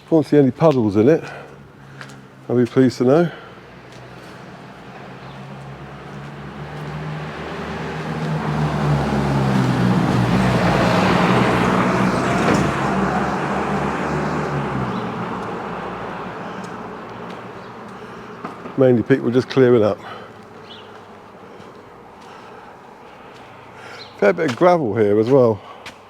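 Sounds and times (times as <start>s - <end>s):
vehicle driving past: 3.3s - 23.9s.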